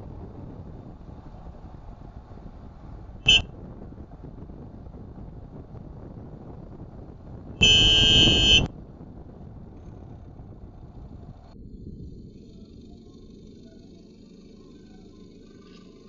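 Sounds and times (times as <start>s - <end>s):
car driving hum: 0.0s - 16.0s
car horn blast: 3.3s - 3.5s, 7.6s - 8.7s.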